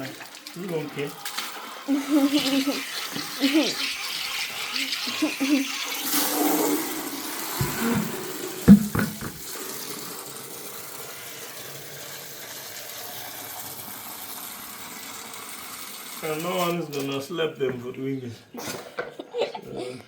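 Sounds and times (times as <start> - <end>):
plastic drinkers knocking: 7.5 - 9.6.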